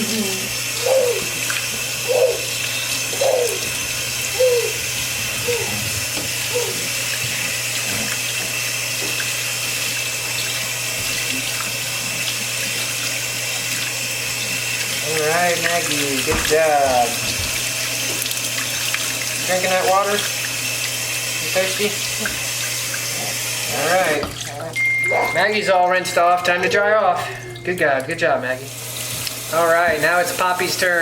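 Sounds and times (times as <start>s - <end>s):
puppy grunting: 0.0s - 7.4s
tap water running: 0.0s - 31.0s.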